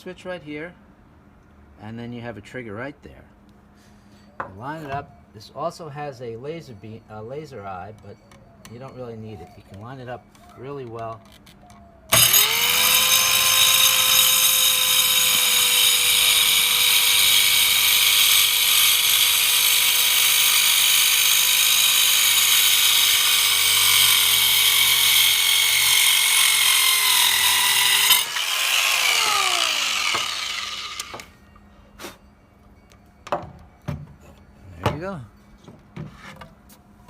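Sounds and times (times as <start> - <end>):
circular saw cutting wood: 12.1 - 31.4.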